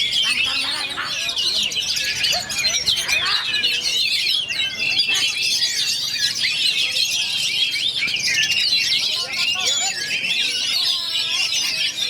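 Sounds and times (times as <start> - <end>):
magpie-robins singing: 0.0 - 12.0.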